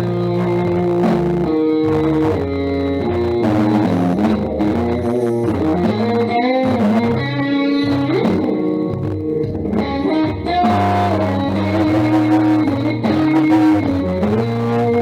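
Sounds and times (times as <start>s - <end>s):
sliding guitar notes: 0.0s - 15.0s
steady bass line: 0.0s - 15.0s.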